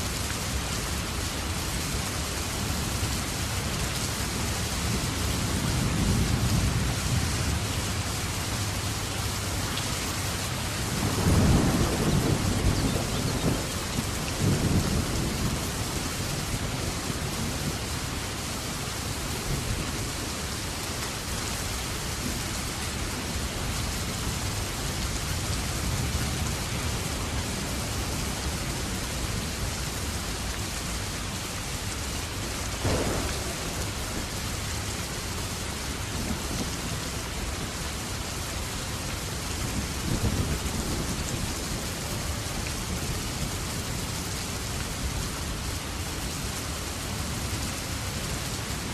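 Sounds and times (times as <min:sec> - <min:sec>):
steady rain falling: 0:00.0 - 0:48.9
low thunder rumbles: 0:10.7 - 0:18.2, 0:32.8 - 0:37.7.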